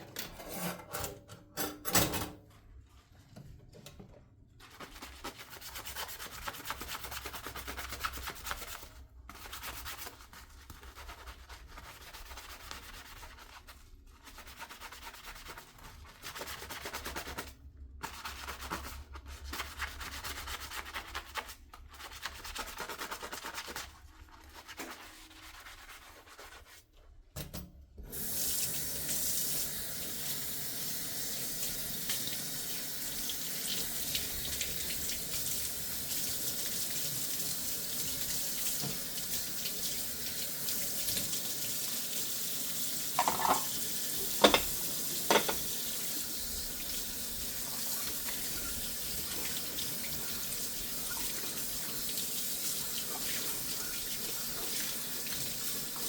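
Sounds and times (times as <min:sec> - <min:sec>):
faucet water running into sink: 0:28.0 - 0:56.0
dishes clinking: 0:43.2 - 0:43.7, 0:44.4 - 0:45.6.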